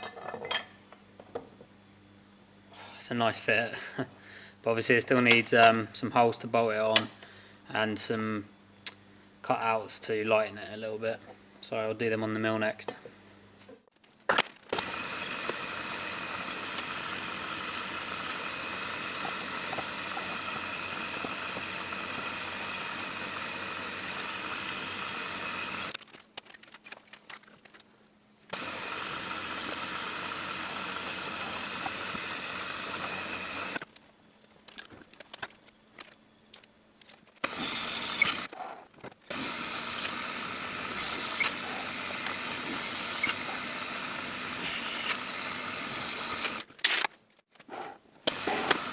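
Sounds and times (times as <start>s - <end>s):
uneven machining noise: 14.7s - 25.9s, 28.5s - 33.8s, 37.4s - 38.6s, 39.3s - 47.1s, 48.3s - 48.9s
milling machine motor whine: 14.8s - 25.9s, 28.5s - 33.8s, 37.4s - 38.5s, 39.3s - 46.7s, 48.3s - 48.9s.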